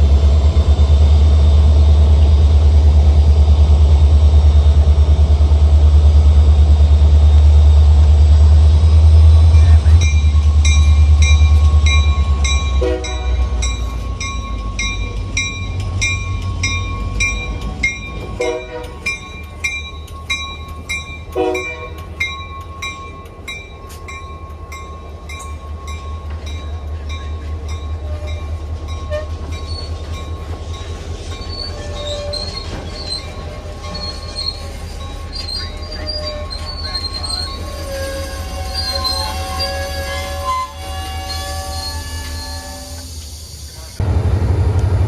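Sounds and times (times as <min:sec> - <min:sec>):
locomotive bell ringing: 0:09.4 - 0:42.8
wheel squeals: 0:28.0 - 0:44.0
diesel engine rumble: 0:43.7 - 0:45.0.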